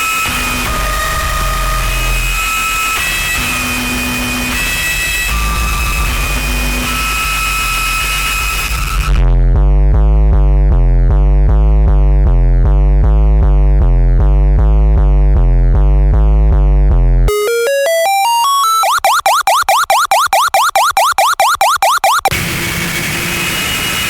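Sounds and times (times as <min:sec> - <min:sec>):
climbing beeping tone: 0:17.3 - 0:22.3.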